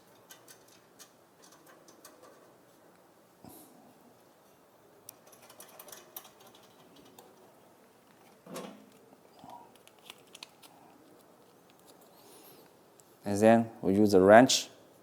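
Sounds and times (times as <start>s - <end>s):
metal parts clicking and tapping: 0.0s - 2.6s, 5.1s - 7.4s.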